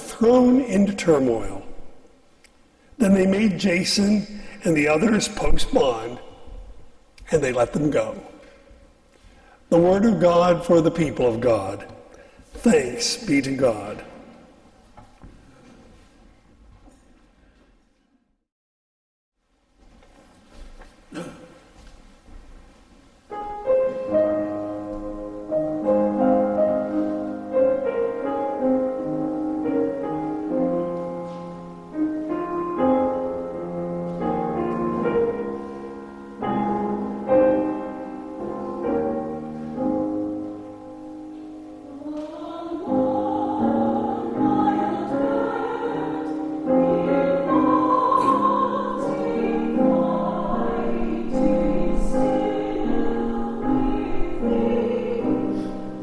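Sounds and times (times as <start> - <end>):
slow piano playing: 23.1 - 56.0
vocal quartet singing: 41.8 - 56.0.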